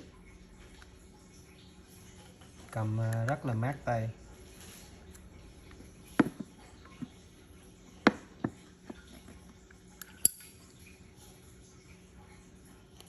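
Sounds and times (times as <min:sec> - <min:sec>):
metal lighter clicks and clinks: 0:10.0 - 0:10.6.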